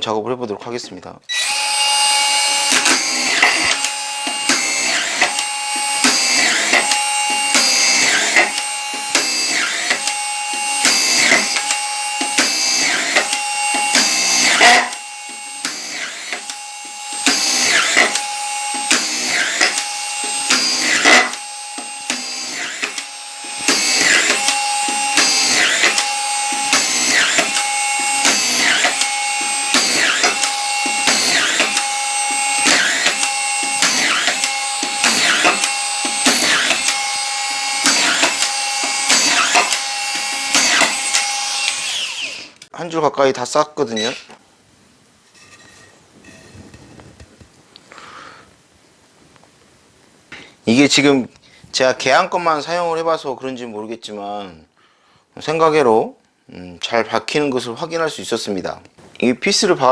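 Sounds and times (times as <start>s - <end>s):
cordless screwdriver driving screws: 1.3s - 16.6s, 17.2s - 42.5s.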